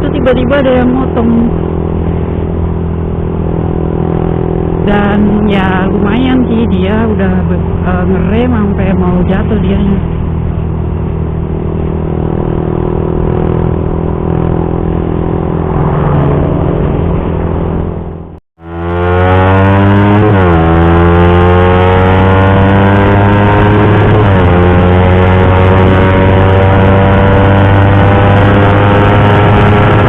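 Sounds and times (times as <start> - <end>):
motorcycle engine at speed: 0.0 - 30.0.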